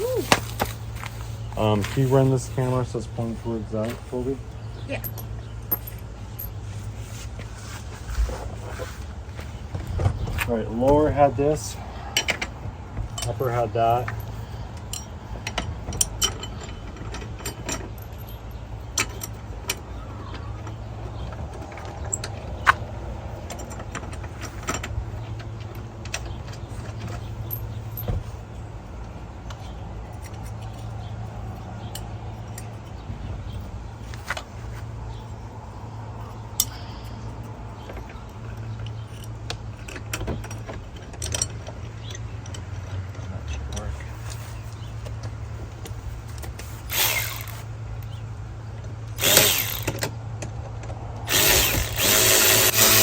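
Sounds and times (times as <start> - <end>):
metal clinks of hardware: 5.0 - 6.6, 13.2 - 19.4.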